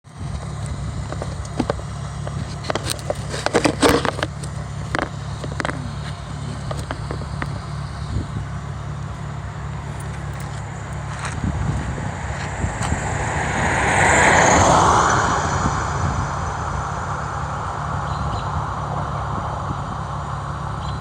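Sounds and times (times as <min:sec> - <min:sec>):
car engine idling: 0:00.0 - 0:21.0
irregular clicks and crackles: 0:00.4 - 0:07.8.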